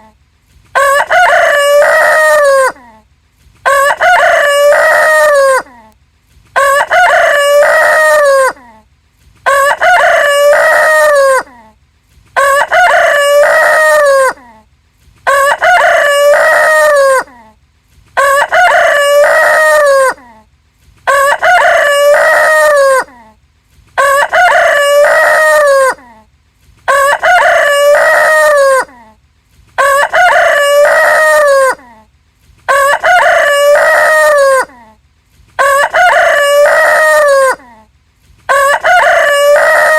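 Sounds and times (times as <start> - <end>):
rooster crowing: 0.8 - 2.8, 3.6 - 5.8, 6.6 - 8.6, 9.4 - 11.5, 12.4 - 14.4, 15.2 - 17.3, 18.2 - 20.2, 21.1 - 23.1, 24.0 - 26.0, 26.9 - 28.9, 29.8 - 31.9, 32.7 - 34.8, 35.6 - 37.7, 38.5 - 39.9.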